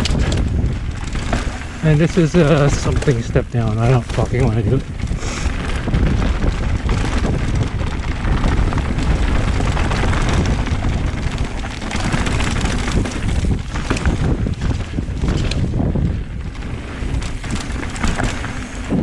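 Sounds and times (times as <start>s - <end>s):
bike rattling over bumps: 0.0s - 19.0s
wind over microphone: 0.0s - 19.0s.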